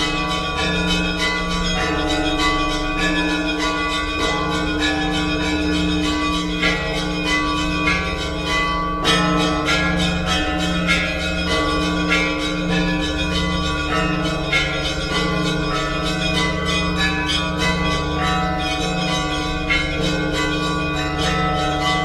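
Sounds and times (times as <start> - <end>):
church bells ringing: 0.0 - 22.0.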